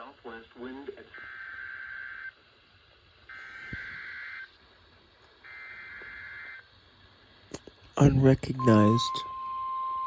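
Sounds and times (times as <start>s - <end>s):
buzzing digital data tones: 3.3s - 4.5s, 8.0s - 9.5s.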